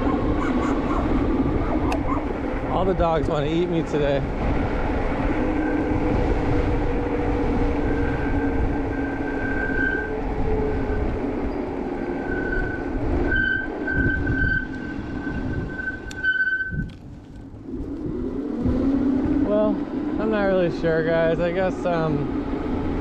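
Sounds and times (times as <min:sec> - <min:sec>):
road rumble: 0:00.0 - 0:23.0
wind: 0:00.0 - 0:23.0
disc brakes squealing: 0:07.9 - 0:16.9
low hum falling in pitch: 0:16.8 - 0:20.7.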